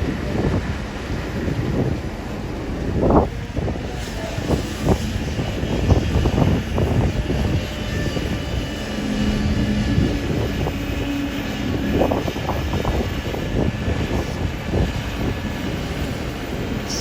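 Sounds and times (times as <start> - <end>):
excavator diesel engine running: 0.0 - 17.0
steady low tone: 7.1 - 14.0.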